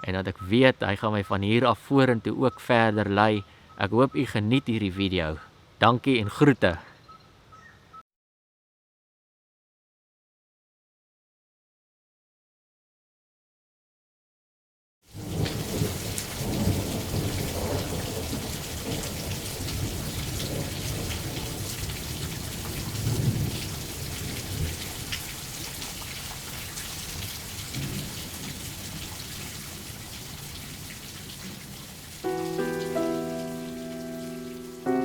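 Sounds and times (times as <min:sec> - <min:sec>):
steady rain: 0:15.1 - 0:35.0
rolling thunder: 0:15.2 - 0:24.8, 0:27.7 - 0:29.0.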